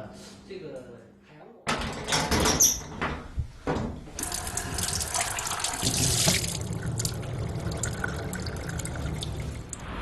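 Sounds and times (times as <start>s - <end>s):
water running: 4.2s - 9.9s.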